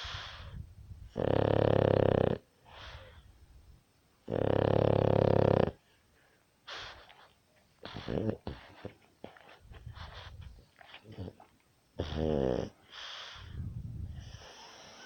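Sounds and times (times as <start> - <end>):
person snoring: 1.2 - 2.4, 4.3 - 5.8, 7.8 - 8.6, 12.0 - 12.7.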